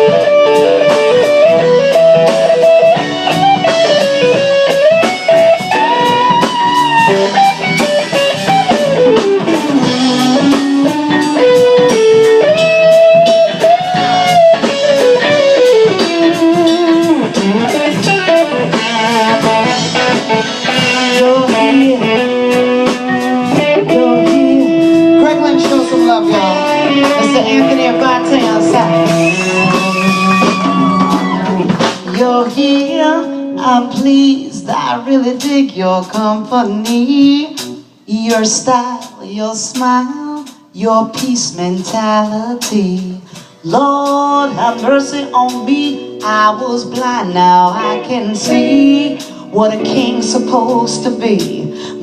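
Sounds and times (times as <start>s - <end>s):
steady drum beat: 0.0s - 33.0s, 33.6s - 52.0s
electric guitar solo: 0.0s - 34.1s, 44.5s - 52.0s.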